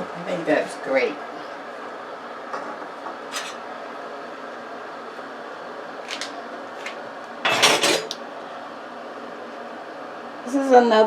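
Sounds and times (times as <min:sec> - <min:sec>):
kitchen items clattering: 0:03.3 - 0:03.6, 0:06.1 - 0:08.2.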